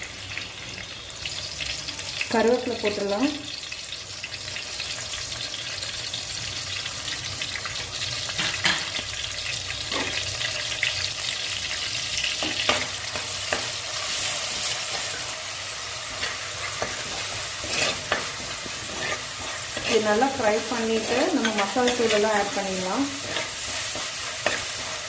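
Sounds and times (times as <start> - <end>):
food sizzling in hot oil: 0.0 - 25.0.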